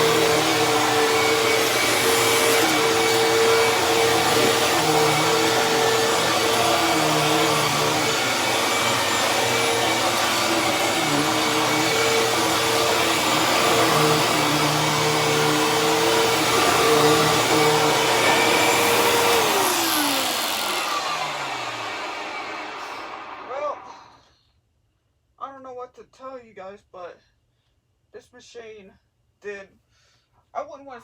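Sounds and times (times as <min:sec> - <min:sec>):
vacuum cleaner running: 0:00.0 - 0:24.1
vacuum motor winding down: 0:00.0 - 0:24.1.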